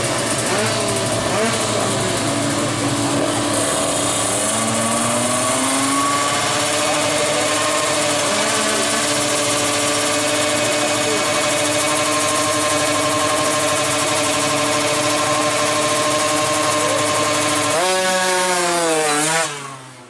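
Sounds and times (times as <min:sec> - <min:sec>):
two-stroke engines revving: 0:00.0 - 0:20.0.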